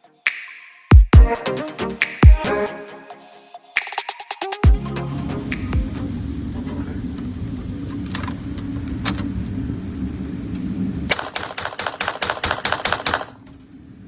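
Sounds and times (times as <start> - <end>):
electronic music with steady beat: 0.0 - 6.2
rapid clatter of sharp cracks: 11.1 - 13.5.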